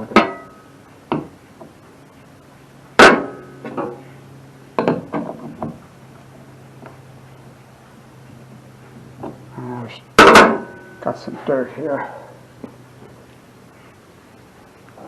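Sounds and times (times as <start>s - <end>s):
faint low hum: 0.0s - 15.0s.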